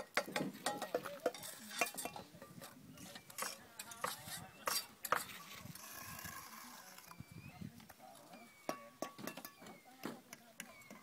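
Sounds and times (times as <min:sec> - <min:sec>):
hard objects clinking and knocking: 0:00.0 - 0:05.4, 0:08.6 - 0:11.0.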